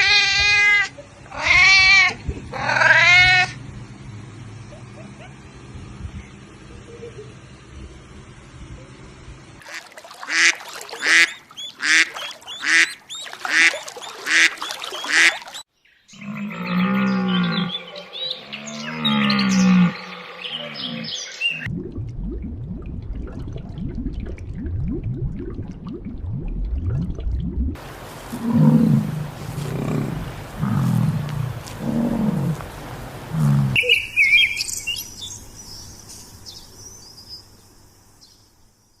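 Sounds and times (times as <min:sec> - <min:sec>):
duck quacking: 0:09.7 - 0:15.6
birds chirping and twittering: 0:10.4 - 0:21.7, 0:29.2 - 0:39.0
low drawn-out animal call: 0:16.2 - 0:21.7, 0:28.2 - 0:34.1.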